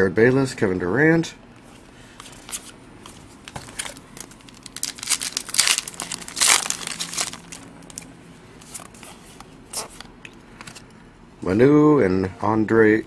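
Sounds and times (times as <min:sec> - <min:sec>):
card wrapper crinkling and tearing: 0:03.4 - 0:08.1.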